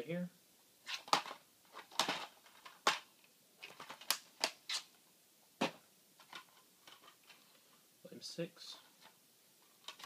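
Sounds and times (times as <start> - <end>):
plastic and card cases handled: 0.8 - 4.9, 5.6 - 7.5, 8.8 - 10.0.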